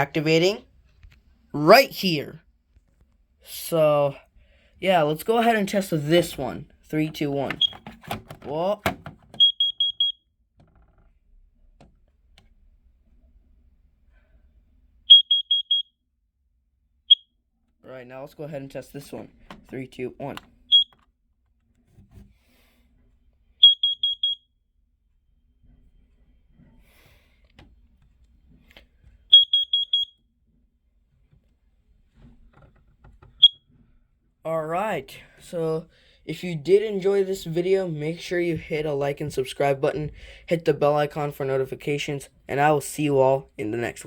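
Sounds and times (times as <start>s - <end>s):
alarm high-pitched beeps: 9.4s - 10.2s, 15.1s - 15.9s, 20.7s - 20.9s, 23.6s - 24.4s, 29.3s - 30.1s.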